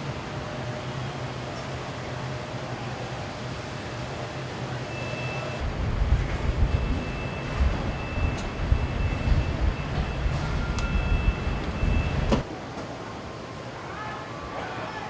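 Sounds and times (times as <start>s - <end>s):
mechanical rumble: 5.5s - 12.5s.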